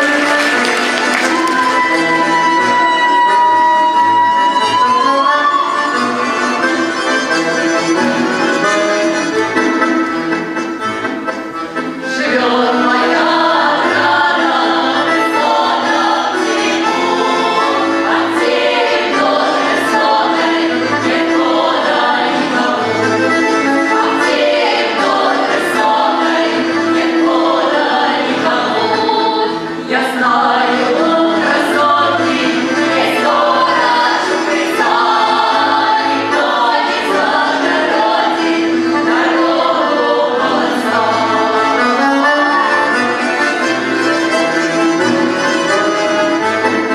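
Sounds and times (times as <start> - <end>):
women singing folk song: 0.0 - 6.0, 12.1 - 43.0
accordion: 0.0 - 46.9.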